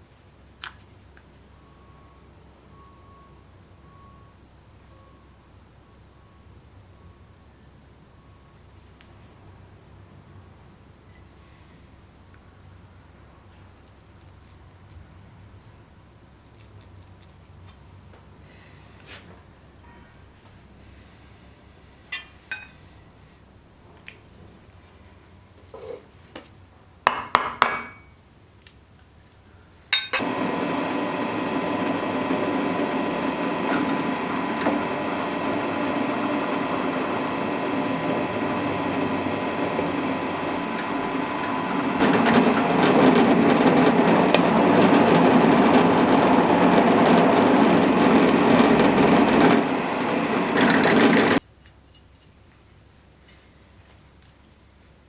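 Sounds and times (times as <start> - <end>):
power tool cutting wood: 30.2 - 51.4.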